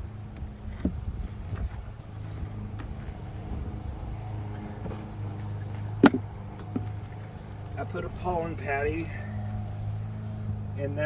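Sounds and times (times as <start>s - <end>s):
honeybees buzzing: 2.0s - 10.4s.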